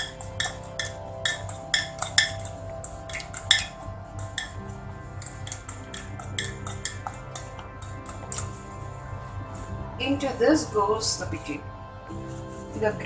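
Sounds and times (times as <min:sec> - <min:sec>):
utensil clinking against bowl: 0:00.0 - 0:04.6
background music: 0:00.0 - 0:13.0.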